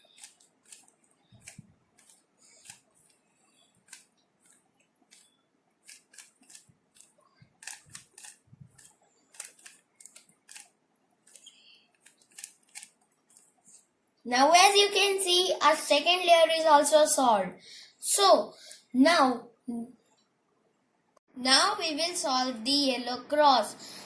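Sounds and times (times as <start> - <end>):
puzzle cube clicking as turned: 0.0 - 3.2, 3.8 - 5.3, 5.9 - 10.7, 11.3 - 13.5.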